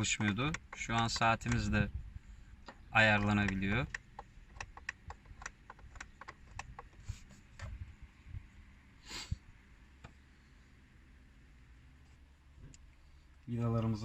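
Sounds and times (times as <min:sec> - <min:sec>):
short hiss: 0:09.0 - 0:09.4.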